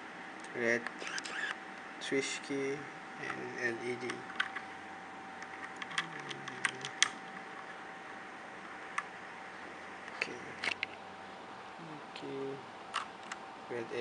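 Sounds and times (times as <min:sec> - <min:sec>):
faint steady whine: 0:00.0 - 0:14.0
mechanical keyboard key clacks: 0:05.8 - 0:07.2.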